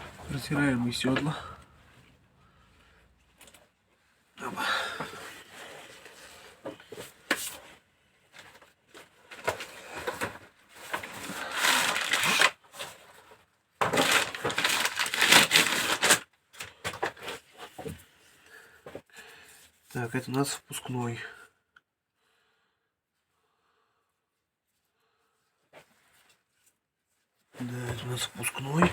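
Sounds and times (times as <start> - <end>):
scraping and rustling: 5.5 - 16.2.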